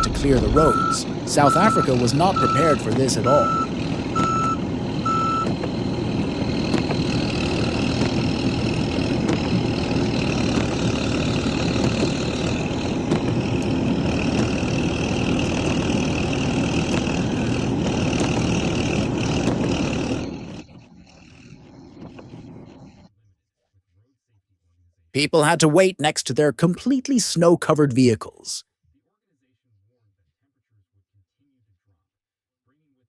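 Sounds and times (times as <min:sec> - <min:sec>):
heavy vehicle engine rumbling: 0:00.0 - 0:20.6.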